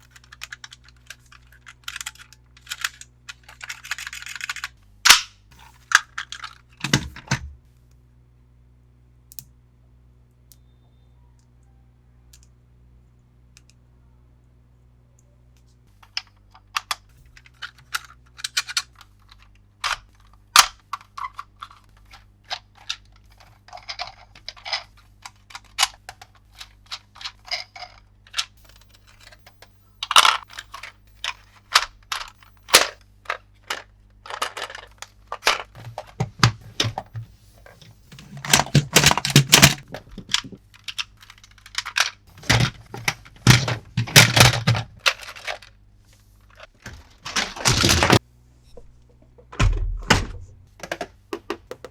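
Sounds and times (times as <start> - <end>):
plastic toy parts clicking: 0.0 - 7.4, 16.0 - 37.1, 38.2 - 45.7.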